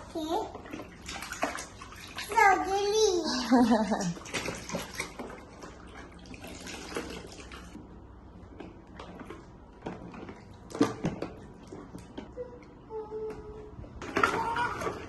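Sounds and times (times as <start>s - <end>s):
water splashing and trickling: 0.1s - 7.8s.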